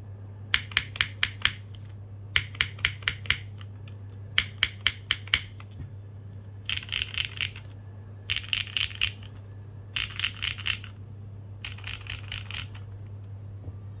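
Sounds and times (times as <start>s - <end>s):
mechanical keyboard typing: 0.5s - 5.8s, 6.7s - 7.7s, 8.3s - 9.4s, 10.0s - 11.0s, 11.6s - 13.0s.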